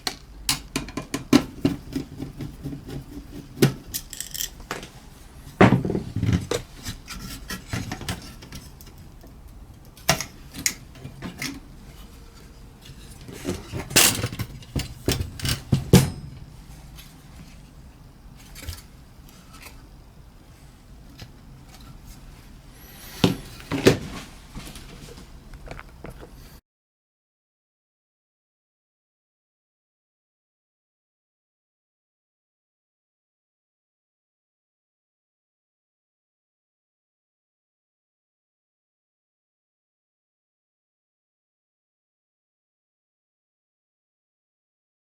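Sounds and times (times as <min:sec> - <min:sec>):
clicks and knocks of parts: 0:03.6 - 0:05.0.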